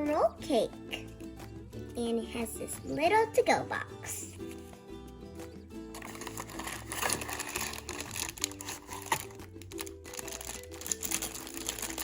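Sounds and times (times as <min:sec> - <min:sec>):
background music: 0:00.0 - 0:12.0
packaging crinkling and rustling: 0:06.0 - 0:12.0.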